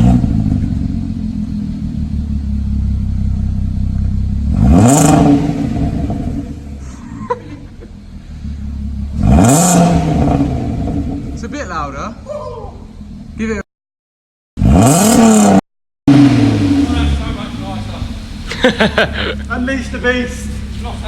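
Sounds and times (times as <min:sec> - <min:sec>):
engine revving from throttle blips: 0:00.0 - 0:06.8, 0:08.1 - 0:12.2, 0:14.6 - 0:18.6
car engine idling: 0:00.0 - 0:13.6, 0:16.1 - 0:21.0.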